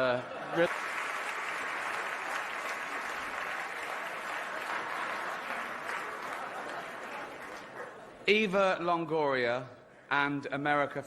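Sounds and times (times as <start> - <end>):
large audience applauding: 0.5 - 8.0.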